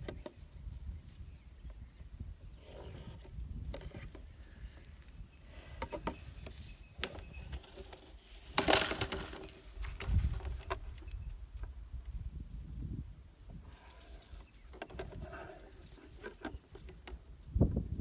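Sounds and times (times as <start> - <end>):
scrape: 13.7 - 14.4.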